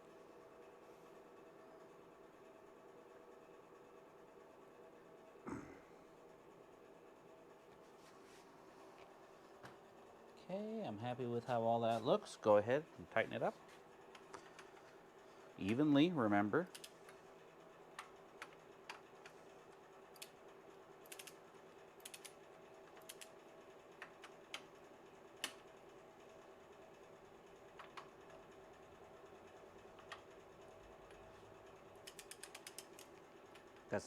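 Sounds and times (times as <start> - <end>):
faint steady hum: 0.0 - 34.0
ratchet wrench clicking: 22.0 - 22.3, 32.1 - 33.0.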